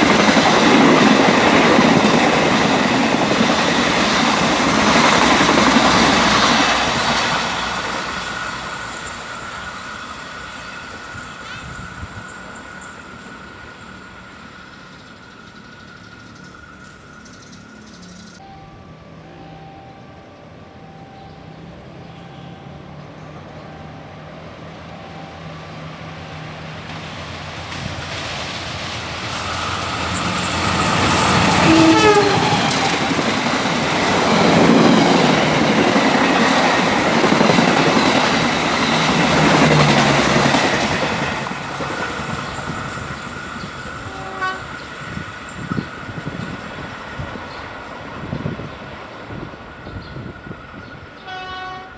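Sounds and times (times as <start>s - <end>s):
train cars clattering on rails: 0.0s - 14.2s, 26.4s - 47.8s
train rumbling past: 0.0s - 51.9s
train horn: 30.8s - 33.3s, 44.0s - 44.9s, 51.2s - 51.9s.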